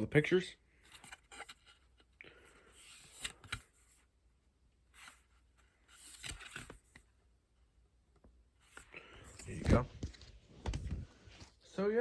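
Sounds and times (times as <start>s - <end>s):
pages turning: 2.8s - 4.0s, 4.9s - 7.1s, 8.6s - 11.6s.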